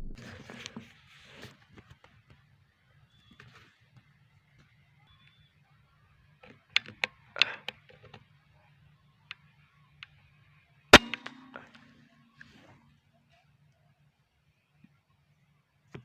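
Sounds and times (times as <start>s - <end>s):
low ringing hum: 0.0s - 0.2s
air rifle shot: 11.0s - 11.9s.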